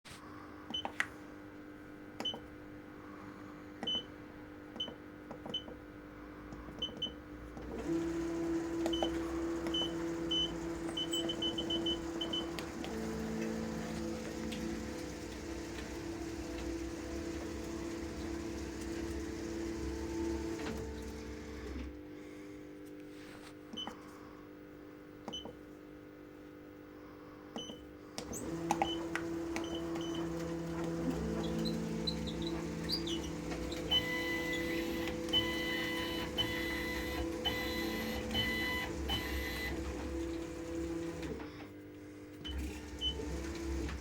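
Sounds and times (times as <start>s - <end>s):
machine motors whining: 6.6s - 22.0s, 28.2s - 41.6s, 42.4s - 44.0s
high tones chopping on and off: 7.6s - 21.9s.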